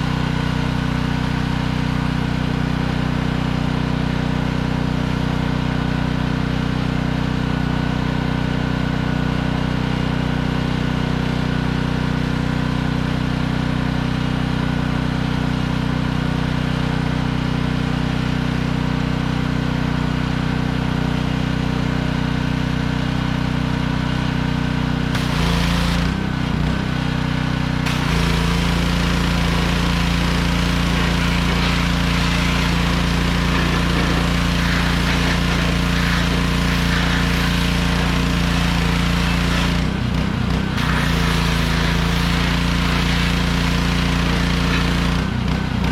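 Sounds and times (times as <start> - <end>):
small gasoline engine running: 0.0 - 45.9
hiss of water spray: 27.9 - 39.8, 40.8 - 45.2.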